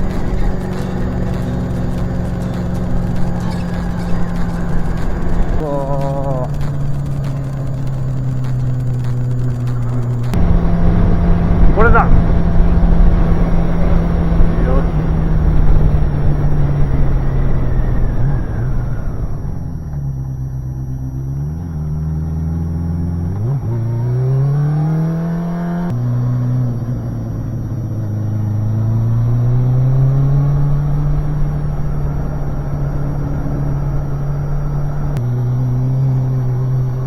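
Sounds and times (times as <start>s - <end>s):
motorcycle engine accelerating: 0.0s - 37.0s.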